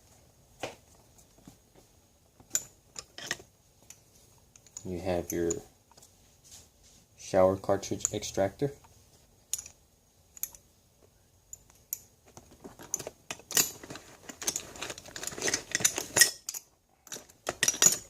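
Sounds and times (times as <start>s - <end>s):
metal hand tools clattering: 12.7s - 18.0s.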